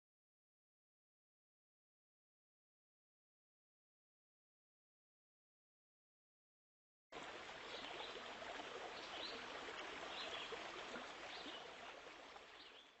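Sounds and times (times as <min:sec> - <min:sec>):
running water rushing: 0:07.2 - 0:13.0.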